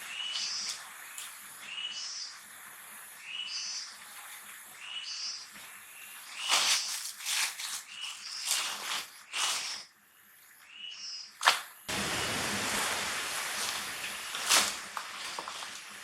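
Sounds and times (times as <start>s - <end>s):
steady hiss: 0.0s - 7.2s, 11.9s - 16.0s
loud noisy bursts: 11.9s - 15.0s.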